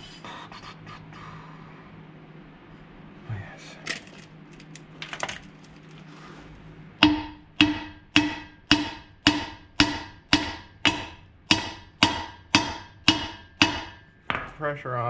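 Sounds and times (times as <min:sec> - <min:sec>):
hammer striking steel: 0:07.0 - 0:14.6.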